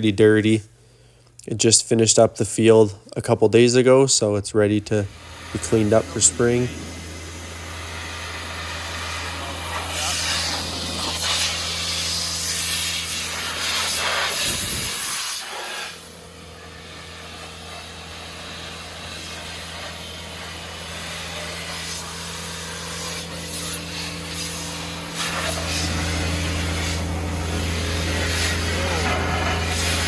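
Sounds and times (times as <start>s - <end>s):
engine humming: 4.9s - 13.2s, 24.4s - 30.0s
compressed air hissing: 5.1s - 30.0s.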